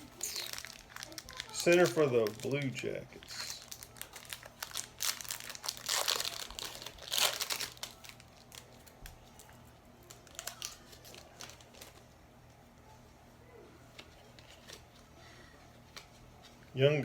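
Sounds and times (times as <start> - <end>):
card pack wrapper crinkling: 0.0 - 12.0.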